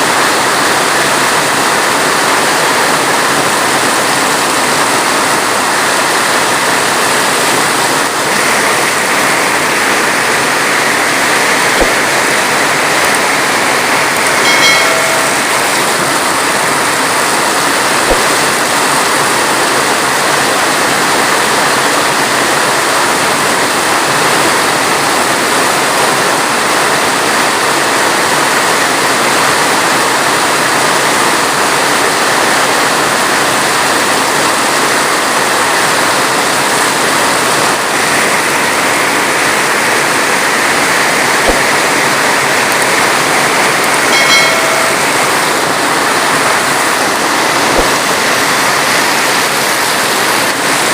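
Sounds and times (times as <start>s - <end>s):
heavy rain: 0.0s - 50.9s
short pitched sound: 8.9s - 18.7s, 44.0s - 49.2s.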